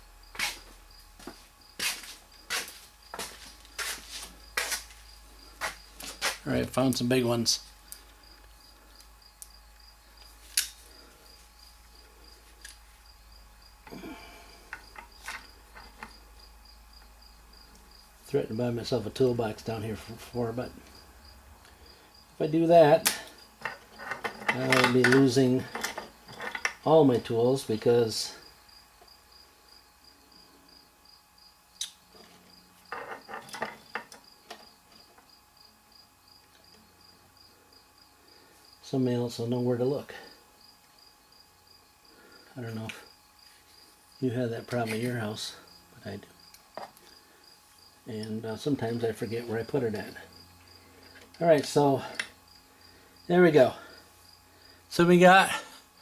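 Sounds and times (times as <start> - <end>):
cricket chirping: 7.0 - 56.0
tools clattering: 23.1 - 26.8.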